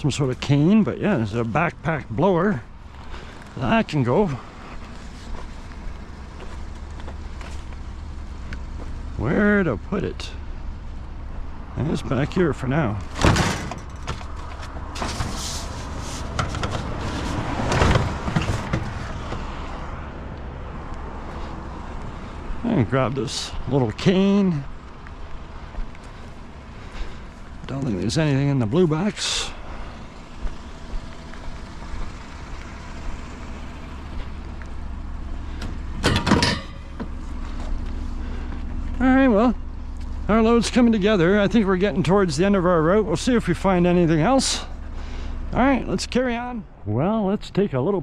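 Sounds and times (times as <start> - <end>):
truck engine rumbling: 0.0 - 48.0
clunks and rustling: 13.0 - 19.6, 29.7 - 39.0
clattering knocks: 13.1 - 15.5, 16.3 - 19.4, 35.6 - 37.2.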